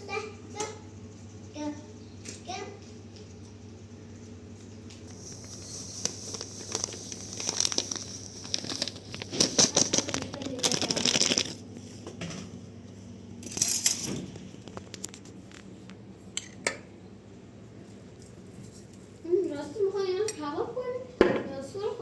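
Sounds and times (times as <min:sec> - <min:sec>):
rustling and crinkling: 0:04.2 - 0:12.1, 0:12.9 - 0:15.8.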